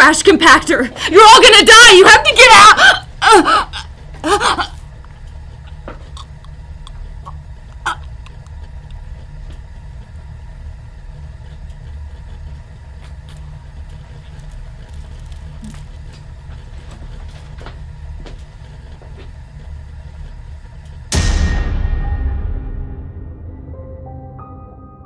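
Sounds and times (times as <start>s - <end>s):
low mechanical rumble: 2.8s - 21.3s
loud ringing boom: 21.1s - 24.8s.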